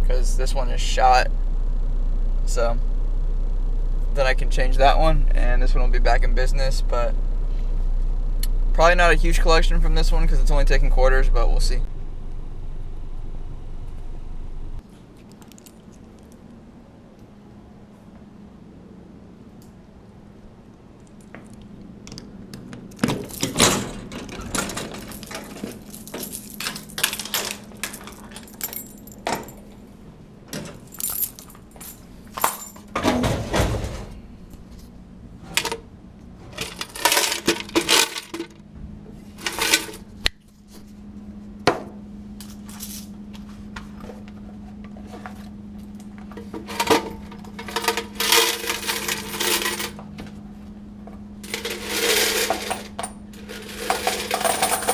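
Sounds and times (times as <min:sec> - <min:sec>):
steady low hum: 0:00.0 - 0:54.9
coins clinking and jingling: 0:25.0 - 0:29.7, 0:30.8 - 0:32.9, 0:47.6 - 0:50.0, 0:51.4 - 0:54.9.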